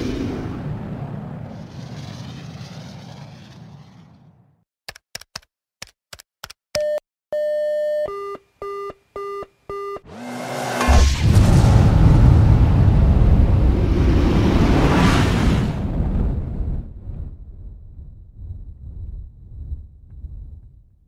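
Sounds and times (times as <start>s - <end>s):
explosion rumble: 0.0s - 4.6s, 10.8s - 21.0s.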